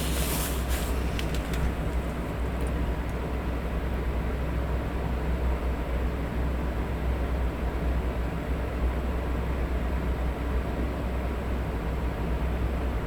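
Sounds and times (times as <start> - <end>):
paper rustling: 0.0 - 2.3
electric fan humming: 0.0 - 3.3.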